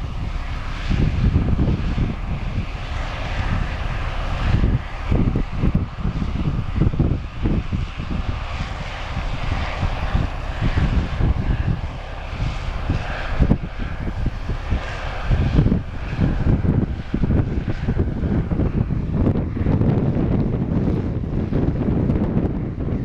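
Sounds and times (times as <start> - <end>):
combine engine droning: 0.0 - 23.0
wind buffeting microphone: 0.0 - 23.0.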